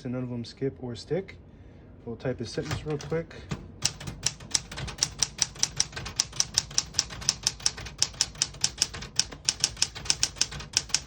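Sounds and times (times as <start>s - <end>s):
typewriter keystrikes: 2.6s - 11.0s.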